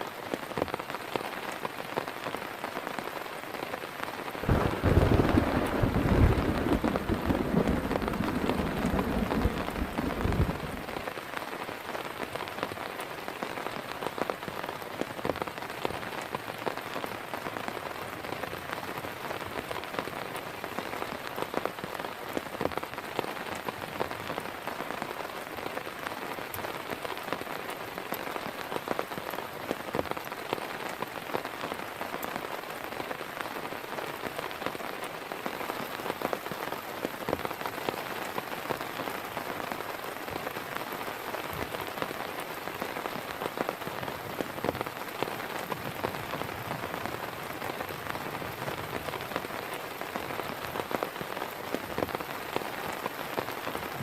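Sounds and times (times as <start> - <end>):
heavy rain falling: 0.0 - 54.0
sharp raindrop hits: 4.4 - 11.0.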